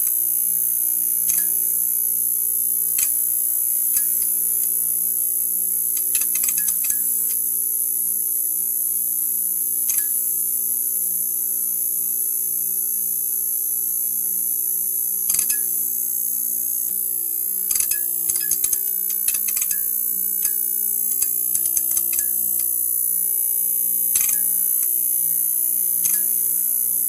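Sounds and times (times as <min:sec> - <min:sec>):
neon sign electrical hum: 0:00.0 - 0:27.0
crackling clicks: 0:03.0 - 0:03.2, 0:05.9 - 0:07.4, 0:17.7 - 0:22.8, 0:24.1 - 0:25.0.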